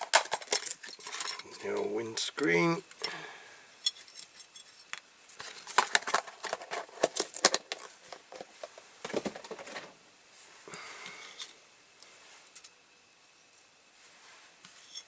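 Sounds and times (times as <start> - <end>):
small parts clicking and tapping: 0.0 - 1.9, 3.8 - 9.9.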